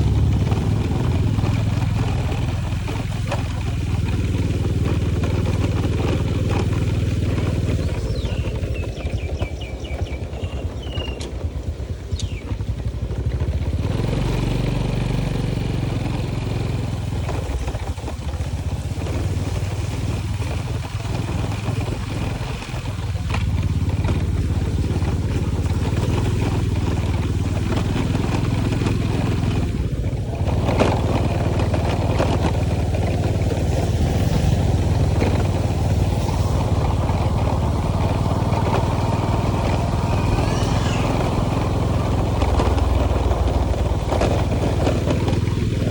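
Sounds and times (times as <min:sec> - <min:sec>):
motorcycle engine running: 0:00.0 - 0:45.9
rushing noise: 0:33.0 - 0:45.9.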